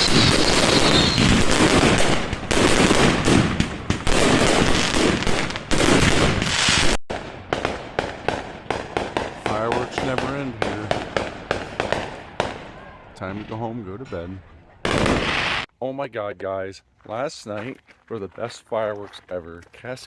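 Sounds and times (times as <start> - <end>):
fireworks crackling bangs and booms: 0.0 - 13.7, 14.8 - 15.7.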